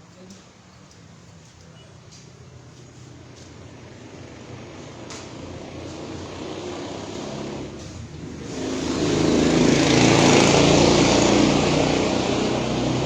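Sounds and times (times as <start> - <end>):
small engine passing: 3.1 - 13.0.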